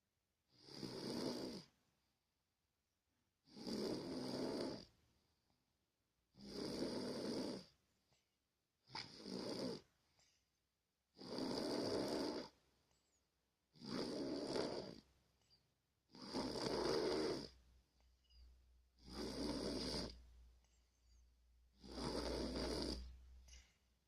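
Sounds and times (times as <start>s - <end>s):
person snoring: 0.5s - 1.7s, 3.4s - 4.9s, 6.3s - 7.7s, 8.9s - 9.9s, 11.1s - 12.6s, 13.7s - 15.1s, 16.1s - 17.6s, 19.0s - 20.2s, 21.7s - 23.7s.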